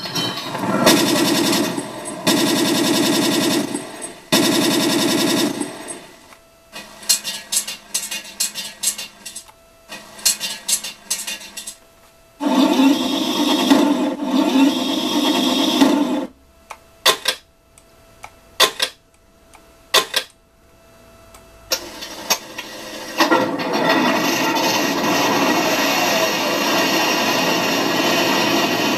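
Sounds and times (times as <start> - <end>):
simulated engine running: 0.4 - 6.2, 12.4 - 16.3, 21.7 - 28.9
fast rattling bursts: 0.6 - 6.1.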